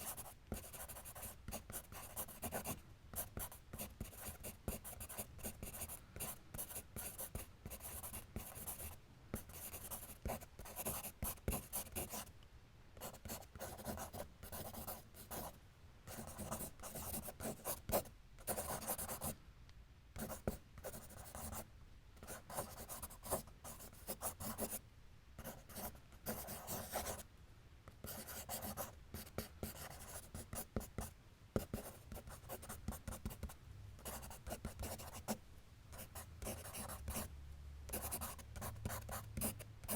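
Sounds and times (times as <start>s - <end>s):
pencil scratching on paper: 0.0s - 12.3s, 13.0s - 15.5s, 16.1s - 19.3s, 22.3s - 24.8s, 25.4s - 27.2s, 28.0s - 35.3s, 36.0s - 37.2s.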